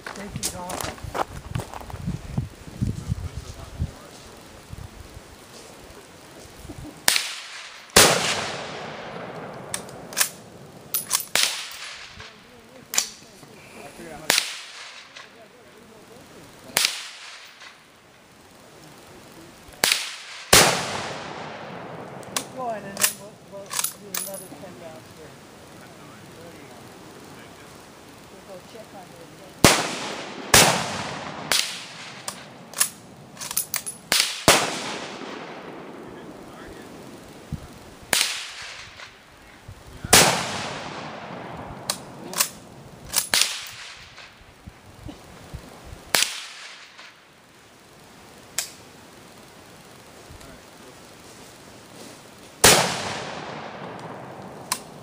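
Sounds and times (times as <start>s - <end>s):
rifle shots echoing: 7.0s - 13.2s, 14.2s - 15.4s, 16.7s - 17.9s, 19.8s - 24.4s, 29.6s - 37.4s, 38.1s - 39.3s, 40.1s - 44.4s, 46.1s - 47.2s, 52.6s - 55.0s
gunshots with echo: 7.1s - 10.2s, 19.8s - 22.2s, 29.6s - 32.5s, 40.1s - 41.8s.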